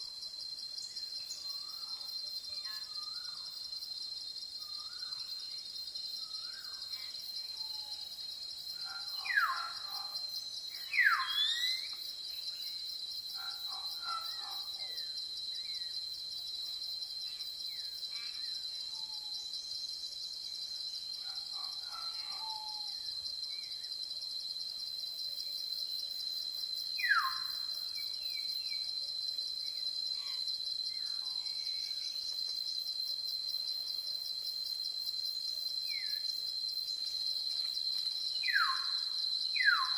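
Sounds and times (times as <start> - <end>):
insects chorus: 0.0 - 39.9.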